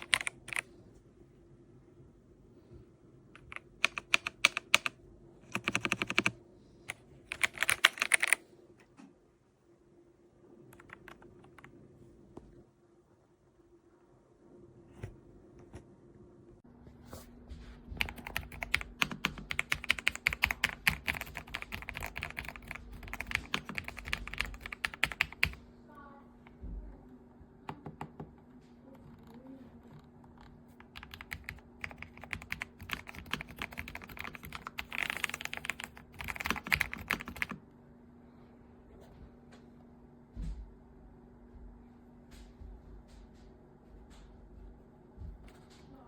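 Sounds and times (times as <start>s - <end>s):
mechanical keyboard typing: 0.0s - 0.6s, 3.4s - 6.4s, 7.3s - 8.4s, 10.8s - 11.7s, 18.0s - 25.6s, 30.8s - 37.6s.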